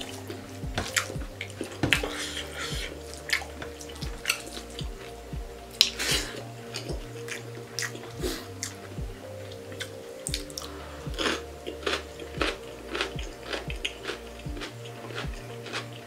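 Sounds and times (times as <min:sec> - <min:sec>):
person chewing: 0:00.0 - 0:05.1, 0:09.5 - 0:16.0
background music: 0:00.0 - 0:16.0.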